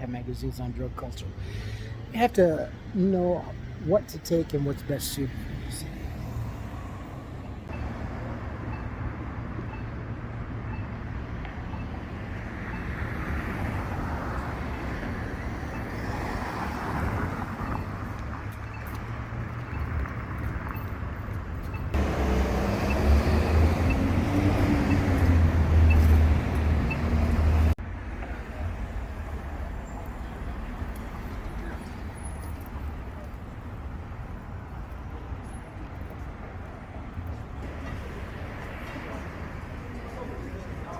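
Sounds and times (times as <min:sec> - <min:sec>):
street traffic: 0:00.0 - 0:40.9
nearby vehicle engine revving: 0:22.0 - 0:27.8.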